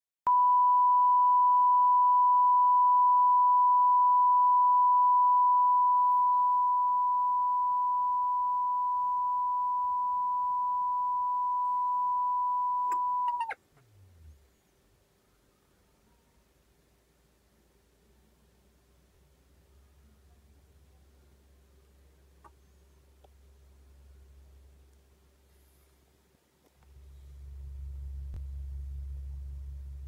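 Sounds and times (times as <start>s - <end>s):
loudspeaker sine-wave test tone: 0.3s - 13.5s, 26.9s - 30.0s.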